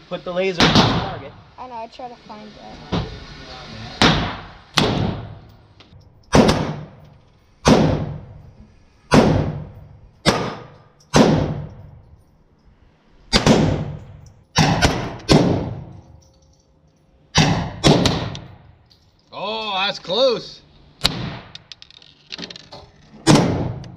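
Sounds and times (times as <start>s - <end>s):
gunshots with echo: 0.6s - 1.3s, 6.3s - 7.0s, 9.1s - 11.7s, 13.3s - 14.0s, 14.6s - 15.9s, 17.4s - 18.6s.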